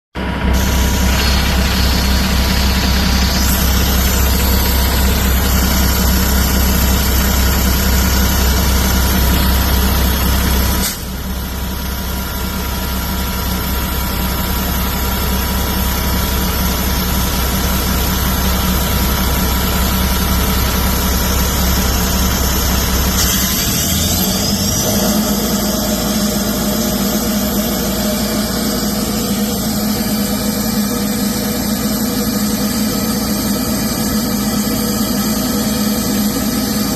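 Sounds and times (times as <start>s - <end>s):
diesel truck engine running: 0.2s - 36.9s
faint rising whine: 0.3s - 10.8s.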